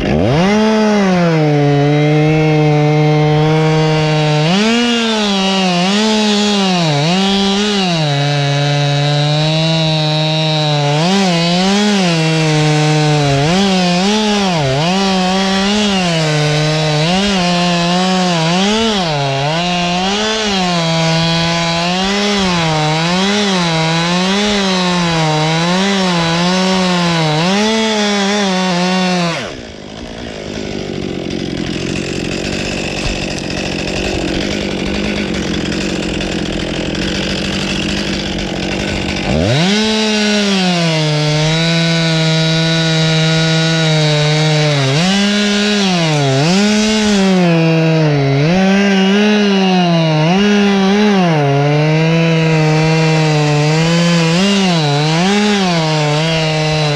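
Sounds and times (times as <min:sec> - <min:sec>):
chainsaw cutting: 0:00.0 - 0:56.9.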